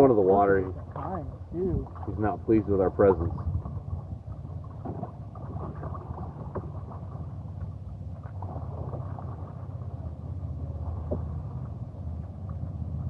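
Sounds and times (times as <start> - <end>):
low rumble: 0.0 - 13.0
water splashing and dripping: 0.2 - 10.2.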